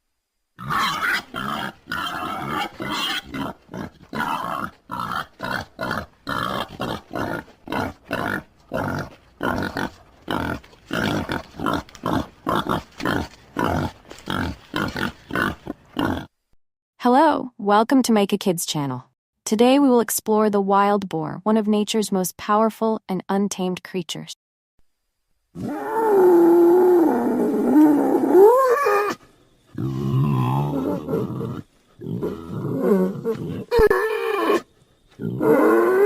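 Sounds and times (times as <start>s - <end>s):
wild boar grunting: 0.6s - 16.3s, 25.6s - 36.0s.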